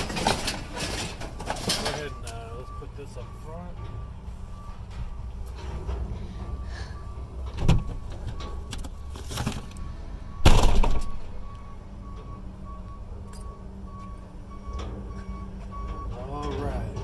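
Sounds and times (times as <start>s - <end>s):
engine rumble: 0.0s - 17.0s
reversing alarm beeping: 0.9s - 17.0s
loud bangs: 10.4s - 11.4s.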